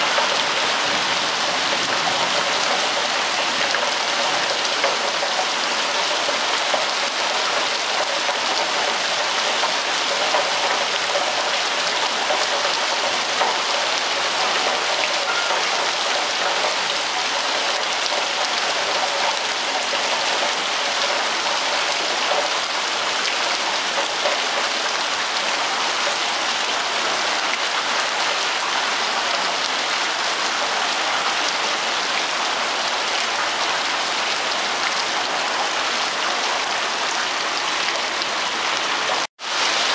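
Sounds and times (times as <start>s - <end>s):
rain falling: 0.0s - 39.9s.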